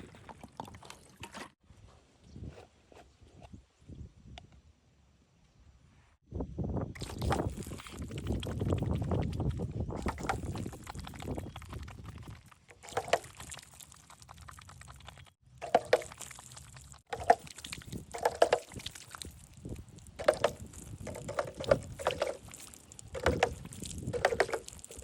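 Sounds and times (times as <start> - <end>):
water pouring and splashing: 0.0 - 1.6, 7.0 - 25.0.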